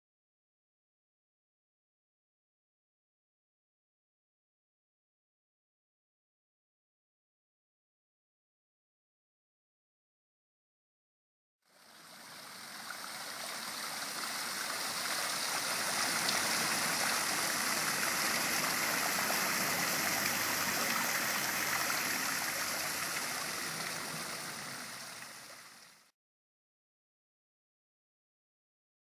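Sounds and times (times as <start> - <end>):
water cascading down a waterfall: 11.9 - 26.1.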